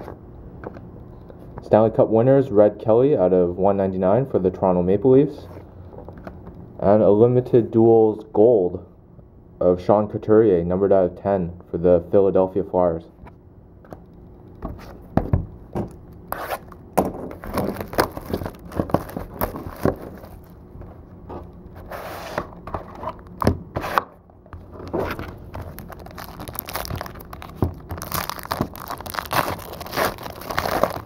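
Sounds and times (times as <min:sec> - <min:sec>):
cardboard and cards scraping: 0:16.3 - 0:20.6, 0:21.2 - 0:31.0
plastic wrap tearing and crinkling: 0:16.4 - 0:20.6, 0:24.9 - 0:31.0.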